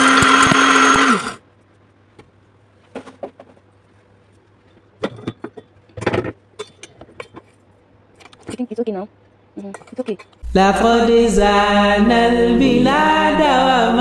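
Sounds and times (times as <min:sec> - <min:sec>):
electric grinder whine: 0:00.0 - 0:01.4
grinder clicks and knocks: 0:00.0 - 0:01.4.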